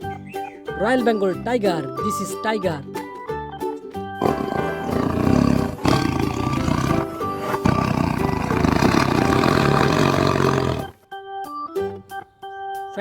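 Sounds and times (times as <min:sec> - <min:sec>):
background music: 0:00.0 - 0:13.0
tiger roaring: 0:04.2 - 0:11.0.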